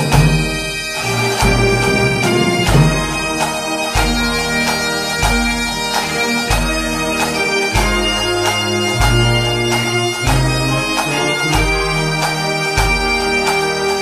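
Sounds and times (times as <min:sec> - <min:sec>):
drum beat: 0:00.0 - 0:07.2
bagpipe music: 0:00.0 - 0:14.0.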